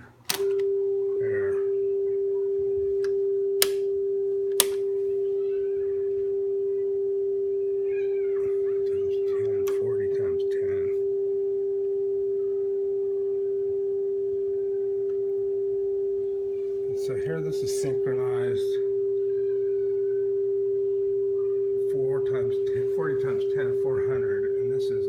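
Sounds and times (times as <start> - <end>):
steady pure test tone: 0.0 - 25.0
sharp clicks: 0.3 - 0.7, 3.0 - 3.8, 4.5 - 4.8.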